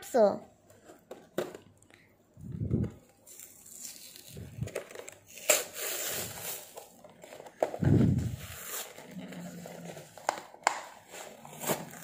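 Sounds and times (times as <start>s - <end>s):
plastic packaging crinkling: 2.8s - 12.0s.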